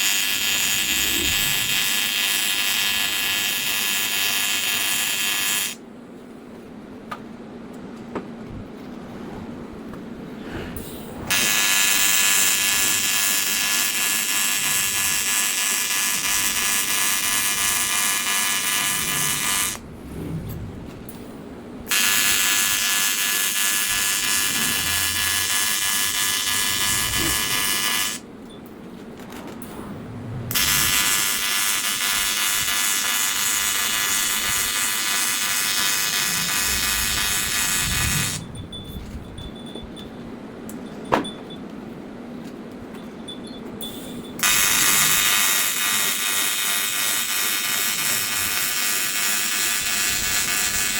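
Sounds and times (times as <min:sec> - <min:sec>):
welding arc buzzing: 0:00.0 - 0:05.8, 0:11.3 - 0:19.8, 0:21.9 - 0:28.2, 0:30.5 - 0:38.5, 0:44.4 - 0:50.9.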